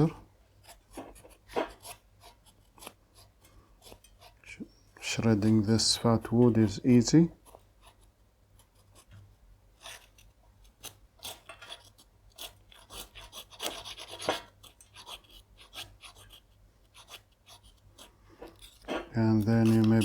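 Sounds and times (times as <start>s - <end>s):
knife blade scraping wood: 0.6s - 4.5s, 9.8s - 20.0s.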